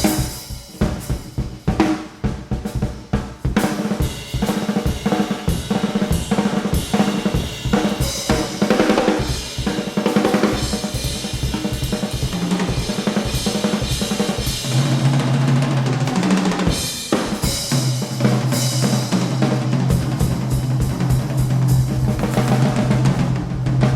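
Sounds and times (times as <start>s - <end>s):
ride and hi-hat cymbals: 0.0s - 2.0s, 2.6s - 15.0s, 16.6s - 23.1s
snare drum strokes: 0.0s - 2.9s, 3.5s - 23.9s
low held notes: 19.6s - 23.9s.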